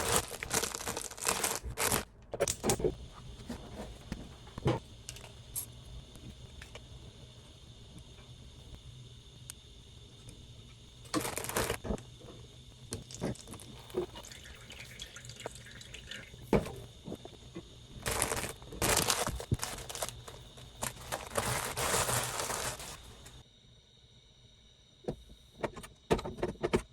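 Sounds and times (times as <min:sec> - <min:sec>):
water running and splashing: 0:13.9 - 0:16.5.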